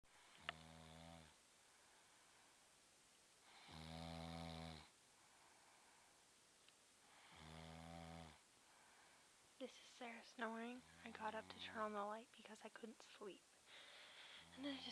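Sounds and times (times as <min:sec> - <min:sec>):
quiet breathing: 0:00.1 - 0:14.9
low-pitched snoring: 0:00.3 - 0:01.4, 0:03.5 - 0:04.9, 0:07.1 - 0:08.4.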